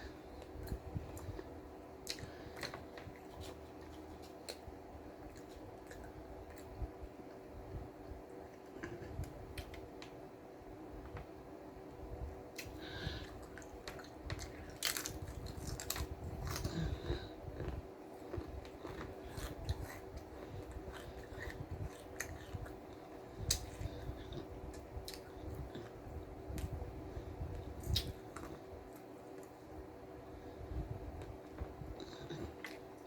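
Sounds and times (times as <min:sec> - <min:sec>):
sandwich crunching: 0:13.4 - 0:24.0.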